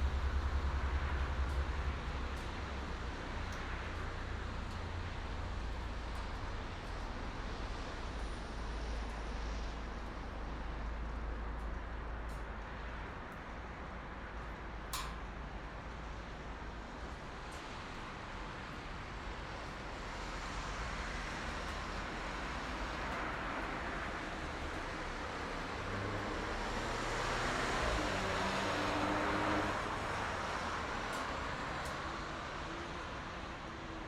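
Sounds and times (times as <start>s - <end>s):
passing vehicle engines: 20.2s - 34.0s.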